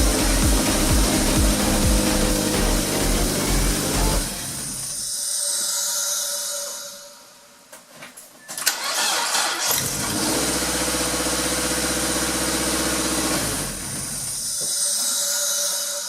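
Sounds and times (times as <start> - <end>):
car engine running: 0.0 - 4.4
starter cranking engine: 8.6 - 14.2.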